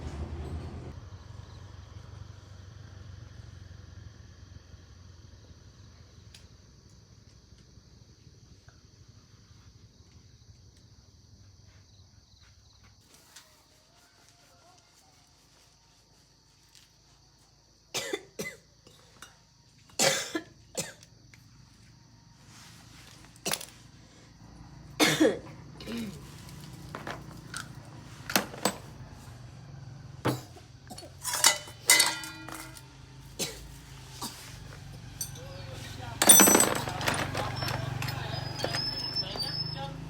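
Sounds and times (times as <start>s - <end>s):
metal tools knocking and clinking: 27.0s - 28.9s, 30.3s - 32.9s, 35.2s - 39.4s.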